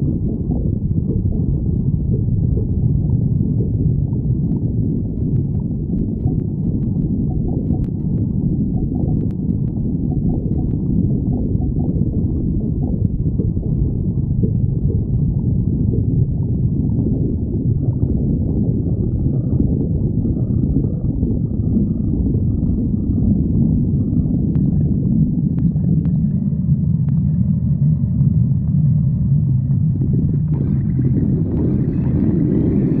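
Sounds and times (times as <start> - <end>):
stomach growling: 0.0 - 33.0
faint clicks: 4.5 - 8.2.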